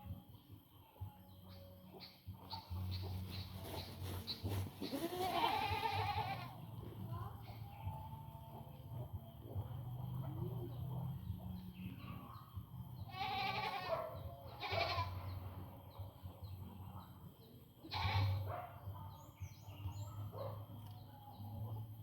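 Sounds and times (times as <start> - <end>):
goats bleating: 4.8 - 6.5, 13.1 - 14.0, 14.6 - 15.2, 17.9 - 18.4.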